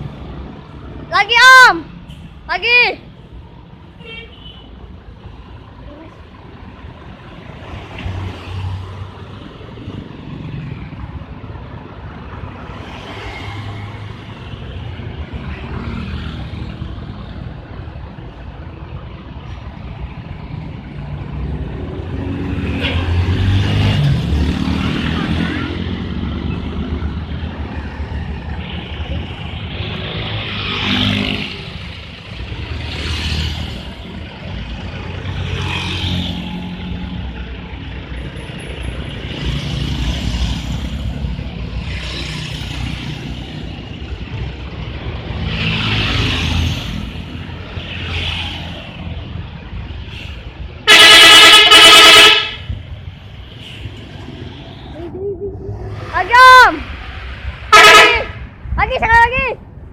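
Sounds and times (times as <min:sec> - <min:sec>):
traffic passing on road: 0:00.0 - 0:59.9
bus musical horn: 0:50.9 - 0:52.7, 0:57.7 - 0:58.4.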